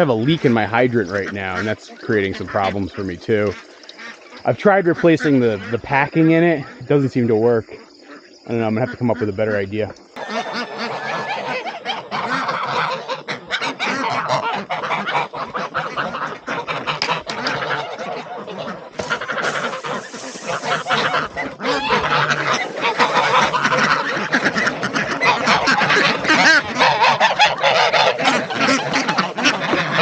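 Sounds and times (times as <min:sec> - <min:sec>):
steady hiss: 0:00.0 - 0:09.9, 0:19.0 - 0:24.6
ducks quacking: 0:00.0 - 0:30.0
geese honking: 0:00.0 - 0:30.0.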